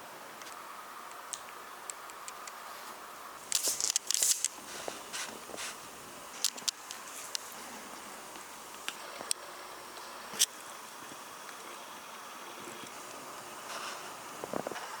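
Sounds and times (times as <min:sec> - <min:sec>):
steady hiss: 0:00.0 - 0:15.0
rustling bursts: 0:03.4 - 0:08.8.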